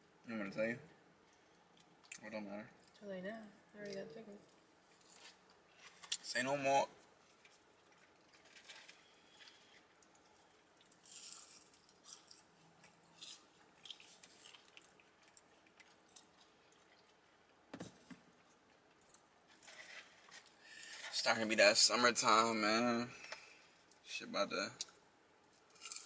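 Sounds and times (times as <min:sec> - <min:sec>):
person chewing: 0:07.3 - 0:17.6.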